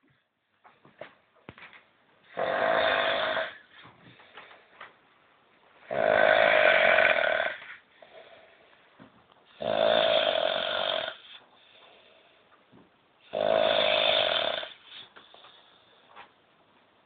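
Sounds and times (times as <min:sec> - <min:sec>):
person snoring loudly: 0:02.3 - 0:03.6, 0:05.9 - 0:07.7, 0:09.6 - 0:11.4, 0:13.3 - 0:14.9.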